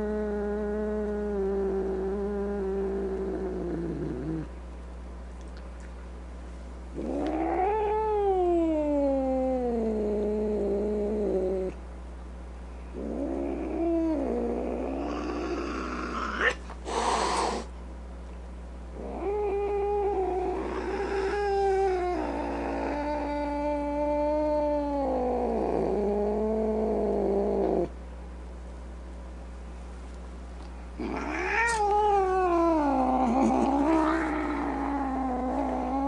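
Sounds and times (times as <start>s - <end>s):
cat yowling: 31.0s - 36.0s.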